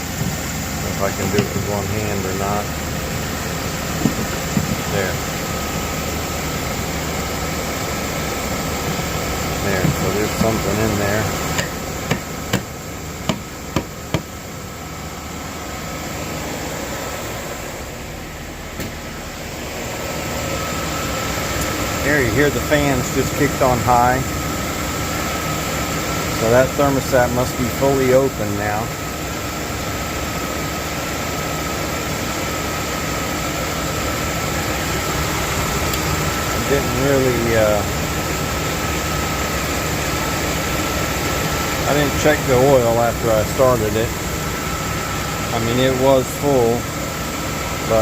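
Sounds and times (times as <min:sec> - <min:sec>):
car engine idling: 0:00.0 - 0:48.0
radiator fans rushing air: 0:00.0 - 0:48.0
sharp knocks: 0:04.0 - 0:04.9, 0:13.3 - 0:14.3.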